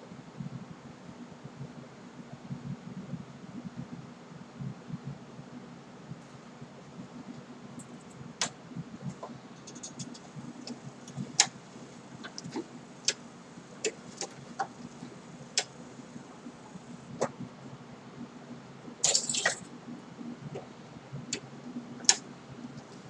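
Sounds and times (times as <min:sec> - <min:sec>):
low steady hum: 0:07.1 - 0:23.0.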